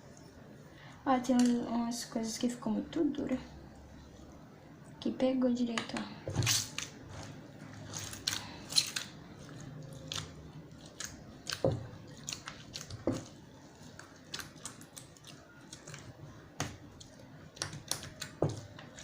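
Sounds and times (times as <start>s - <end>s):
slime squelches: 5.6s - 19.0s.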